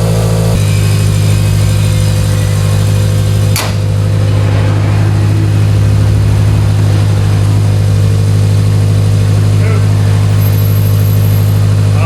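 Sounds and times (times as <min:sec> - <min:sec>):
car engine running: 0:00.0 - 0:12.0
sharp knock: 0:03.5 - 0:03.9.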